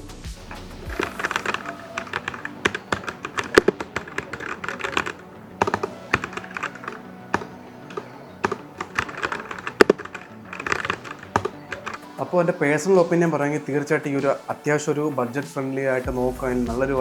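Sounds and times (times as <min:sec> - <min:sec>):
mechanical keyboard typing: 0:00.5 - 0:12.2.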